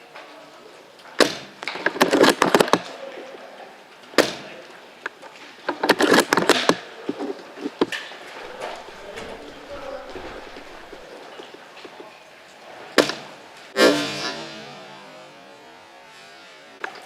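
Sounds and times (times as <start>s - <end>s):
airsoft rifle firing: 8.4s - 11.1s.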